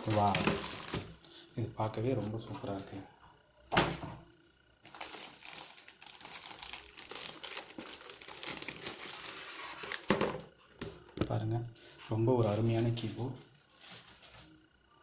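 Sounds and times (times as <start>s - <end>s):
packaging crinkling: 0.0s - 1.1s, 4.8s - 10.4s.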